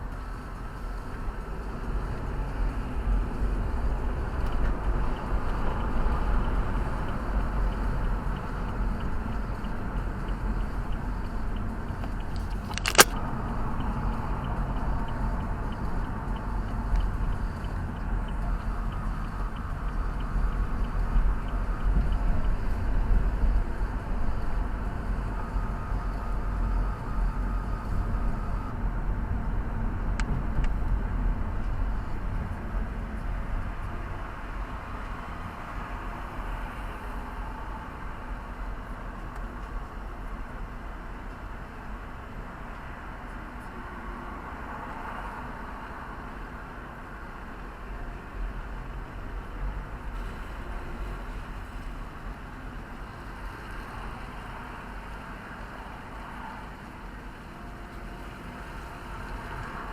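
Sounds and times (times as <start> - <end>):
car engine and road noise: 0.0 - 59.9
sharp click: 12.0 - 13.2.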